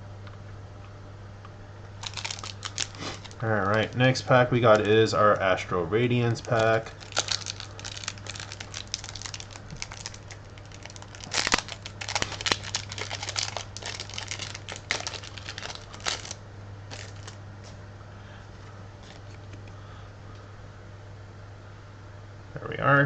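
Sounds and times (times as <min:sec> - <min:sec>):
steady low hum: 0:00.0 - 0:23.0
foil wrapper crinkling and tearing: 0:02.0 - 0:17.4, 0:19.0 - 0:19.7.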